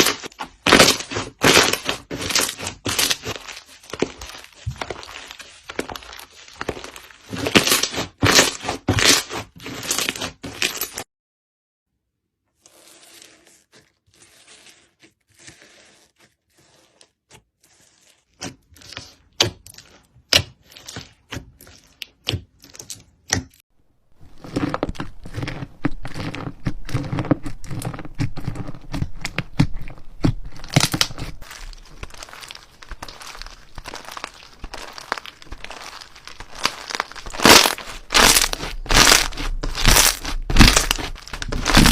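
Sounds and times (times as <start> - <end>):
slime crackling by hand: 0.0 - 11.0, 24.3 - 41.9.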